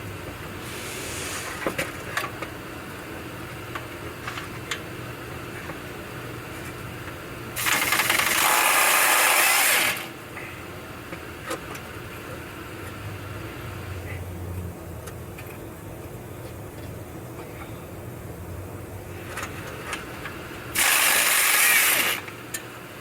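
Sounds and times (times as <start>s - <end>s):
power tool running: 7.6s - 10.2s, 20.7s - 22.3s.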